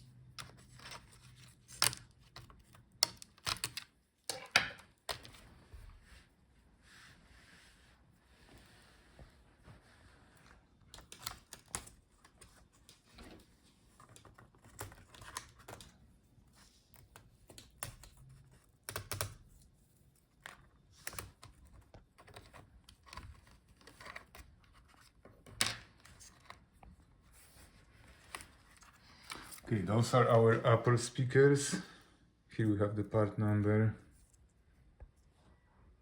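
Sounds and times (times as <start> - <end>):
plastic parts clicking and scraping: 0.1 - 5.4, 10.9 - 16.0.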